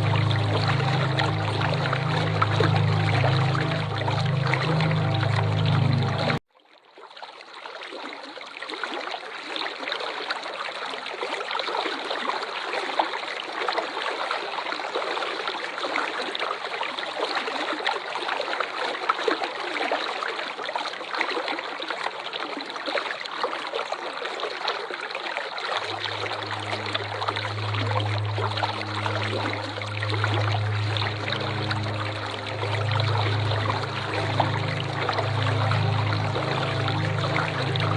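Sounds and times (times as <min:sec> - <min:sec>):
low steady hum: 0:00.0 - 0:06.4, 0:25.8 - 0:37.9
waterfall rushing: 0:00.0 - 0:06.4, 0:25.8 - 0:37.9.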